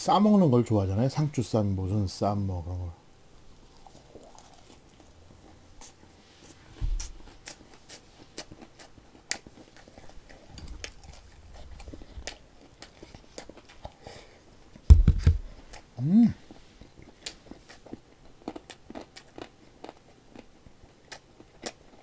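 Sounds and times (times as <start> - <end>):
crisp chewing crunches: 3.6 - 6.0, 7.0 - 14.2, 16.5 - 22.0
low thump: 14.9 - 15.6.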